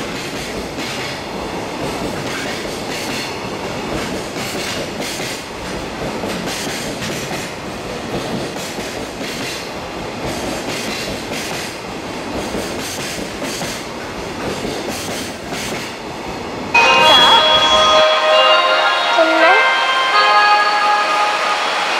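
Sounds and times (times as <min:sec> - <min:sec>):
music: 0:16.8 - 0:21.9.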